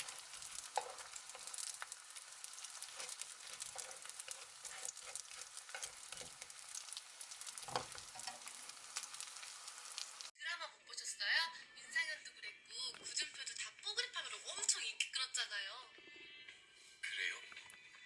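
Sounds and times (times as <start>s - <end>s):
food sizzling in a pan: 0.0s - 10.4s.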